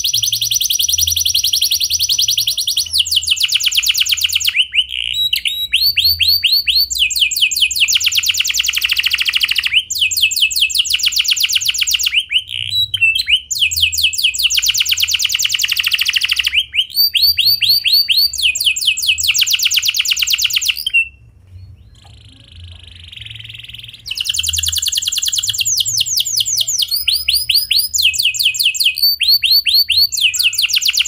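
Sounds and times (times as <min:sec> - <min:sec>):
canary singing trills: 0:00.0 - 0:31.0.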